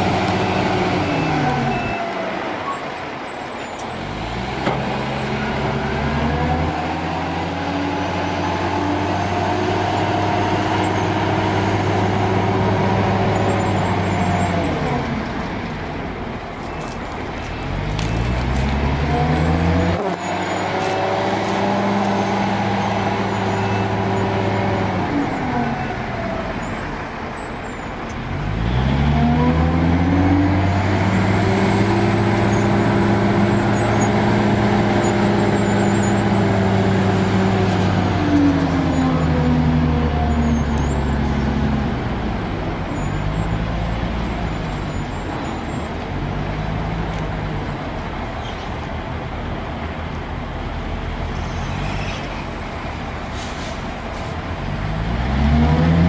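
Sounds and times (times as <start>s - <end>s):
heavy machine engine revving: 0.0s - 2.2s, 4.0s - 15.8s, 17.6s - 26.5s, 28.1s - 48.3s, 51.1s - 56.0s.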